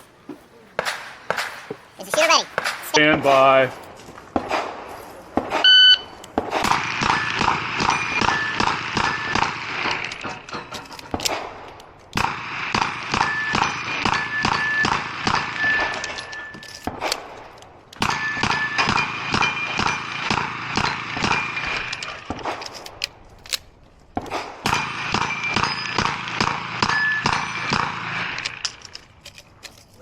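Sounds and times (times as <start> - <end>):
revolver gunshots: 0.8 - 3.7, 4.3 - 23.2, 24.1 - 28.8
shot timer beep: 5.7 - 6.1
steel plates ringing: 7.1 - 11.2, 12.8 - 16.9, 18.0 - 22.2, 24.7 - 28.8.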